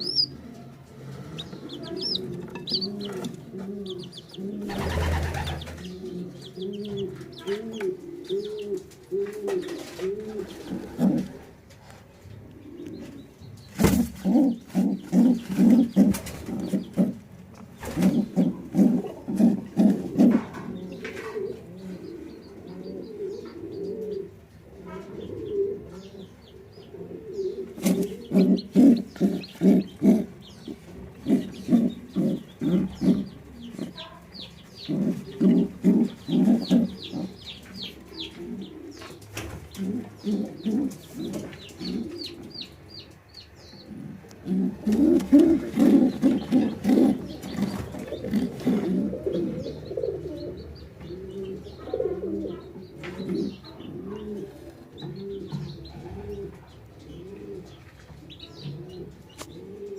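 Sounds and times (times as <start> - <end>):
pigeon cooing: 0.0 - 13.2, 13.8 - 43.1, 43.7 - 59.9
chicks peeping: 0.0 - 59.9.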